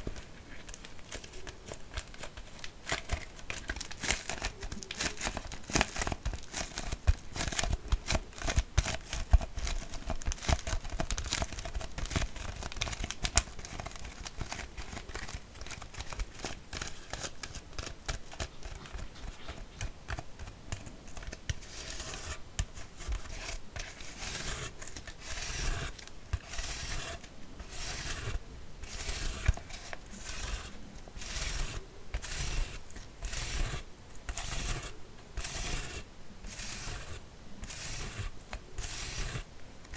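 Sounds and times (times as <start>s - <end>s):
plastic bottle crinkling: 0.0s - 7.6s
scratching strokes on plastic: 0.0s - 39.9s.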